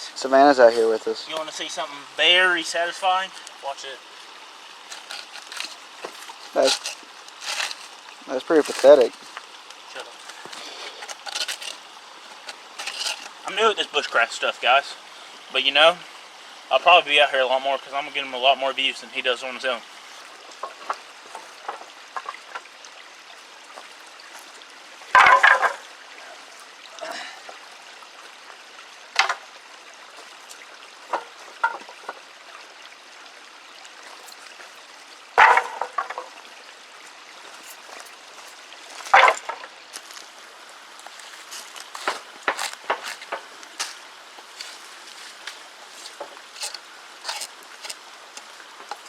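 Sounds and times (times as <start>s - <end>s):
steady low hiss: 0.0s - 49.0s
bark tearing off wooden poles: 4.8s - 9.4s, 10.0s - 13.5s, 35.4s - 36.3s, 39.0s - 39.7s, 41.4s - 49.0s.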